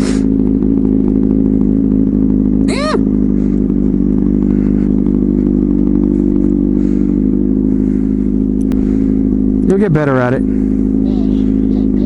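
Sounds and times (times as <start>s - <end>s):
motorcycle engine cruising: 0.0s - 12.0s.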